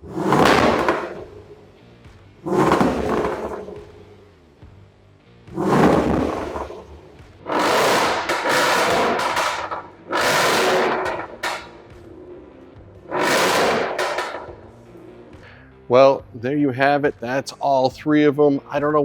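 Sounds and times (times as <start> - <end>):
engine revving through exhaust: 0.0 - 4.5, 5.5 - 15.5.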